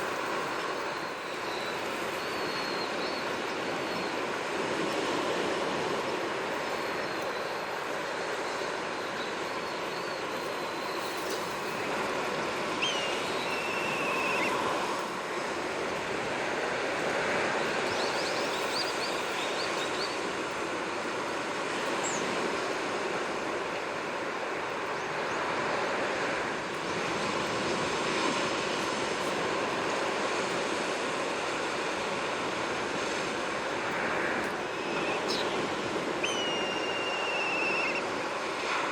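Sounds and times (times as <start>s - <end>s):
sea waves on shore: 0.0s - 38.9s
faint bird calls: 12.8s - 14.7s, 34.6s - 35.6s, 36.2s - 38.1s.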